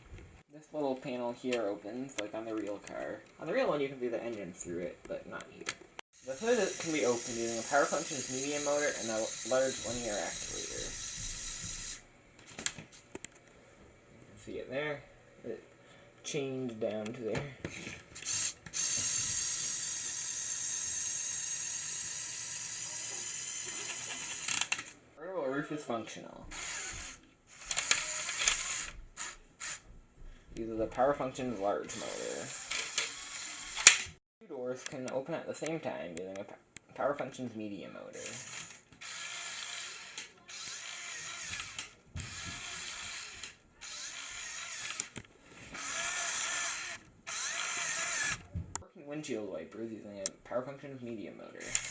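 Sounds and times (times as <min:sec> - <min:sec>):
toy motor and gears whirring: 0:06.2 - 0:12.0, 0:18.2 - 0:25.0, 0:26.5 - 0:29.9, 0:31.6 - 0:34.2, 0:38.2 - 0:48.5, 0:51.6 - 0:51.9.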